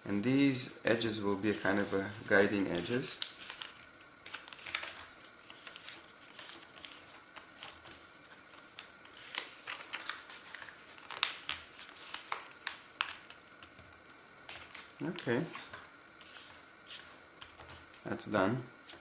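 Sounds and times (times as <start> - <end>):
paper being folded: 1.5 - 13.8.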